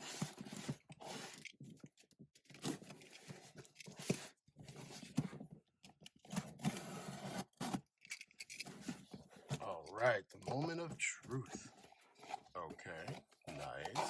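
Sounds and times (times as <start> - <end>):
cardboard scraping: 6.3 - 7.8, 11.3 - 14.0.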